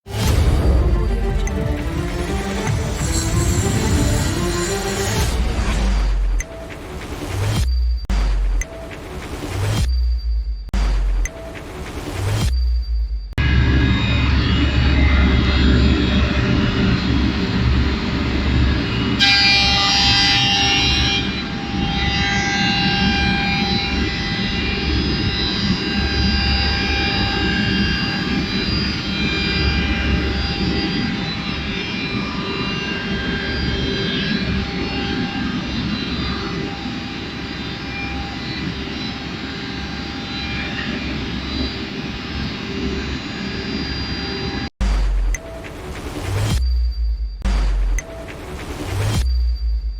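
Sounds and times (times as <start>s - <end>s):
high-pitched cutter whine: 0.1s - 6.4s, 13.4s - 44.7s
wood moulder machine running: 0.2s - 5.2s.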